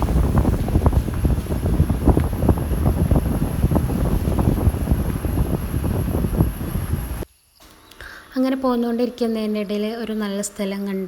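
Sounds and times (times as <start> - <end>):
vehicle low rumble: 0.0 - 7.2
wind buffeting microphone: 0.0 - 7.2.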